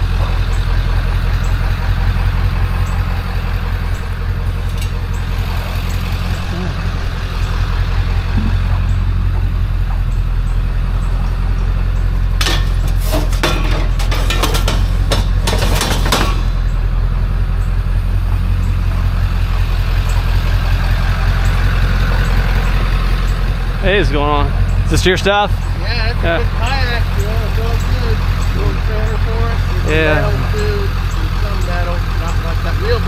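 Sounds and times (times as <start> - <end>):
vehicle engine humming: 0.0 - 33.0
clattering knocks: 12.3 - 17.0.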